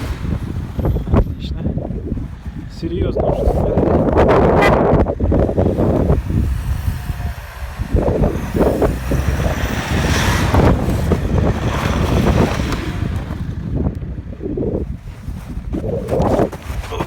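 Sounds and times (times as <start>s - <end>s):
suv engine running: 3.6s - 17.0s.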